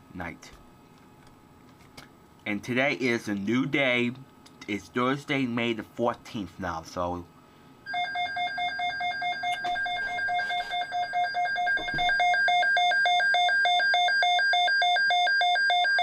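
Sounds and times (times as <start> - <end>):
pulsing electronic alarm tone: 7.9 - 16.0.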